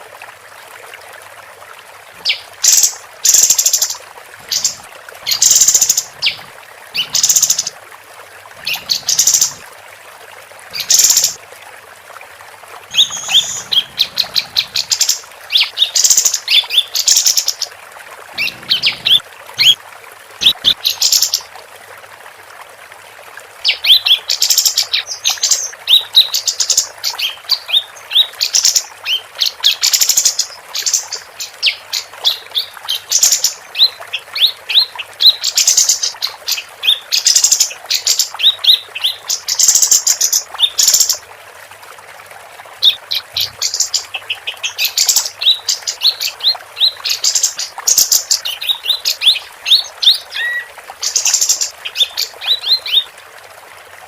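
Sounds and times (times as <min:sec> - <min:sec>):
songbird chirping and trilling: 0:12.9 - 0:17.6, 0:18.4 - 0:19.8, 0:42.8 - 0:53.1.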